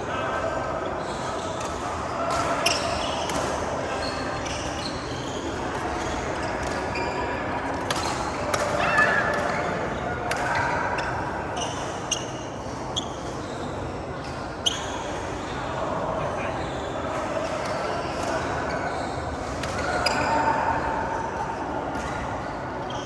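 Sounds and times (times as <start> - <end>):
people talking: 12.9 - 23.0.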